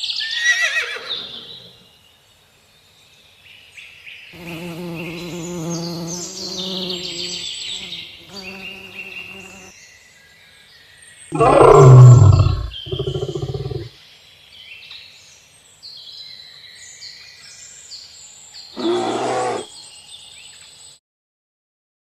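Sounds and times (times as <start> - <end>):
animal growling: 11.3 - 13.9, 18.8 - 19.7
large animal roaring: 11.3 - 13.9, 18.8 - 19.7
high bird chirps: 11.4 - 13.9.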